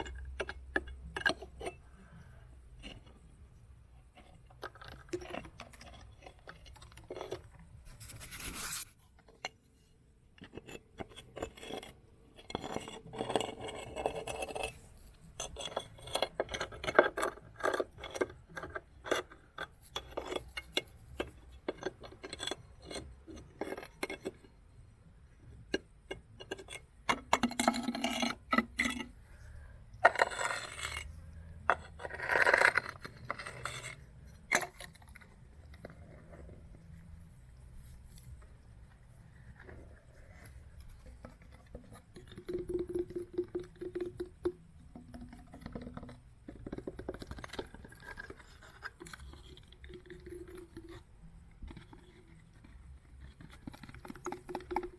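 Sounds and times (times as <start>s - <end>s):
stones clattering and grinding: 25.7s - 37.0s, 39.4s - 51.0s.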